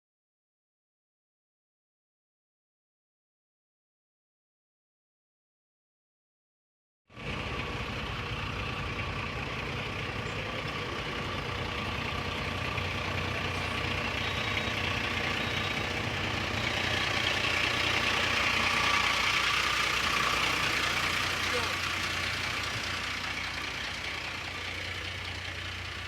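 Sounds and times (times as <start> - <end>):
fire engine running: 7.1 - 26.0.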